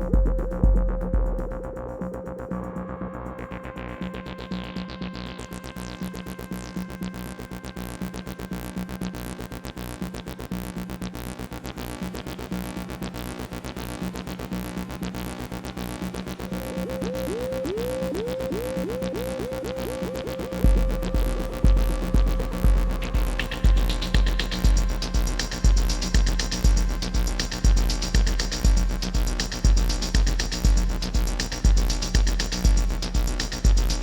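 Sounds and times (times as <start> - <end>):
heavy kick drum: 0.0 - 1.7, 20.6 - 34.0
drum machine pattern: 0.0 - 2.9, 16.6 - 34.0
repeating synth bassline: 0.0 - 5.7, 16.5 - 34.0.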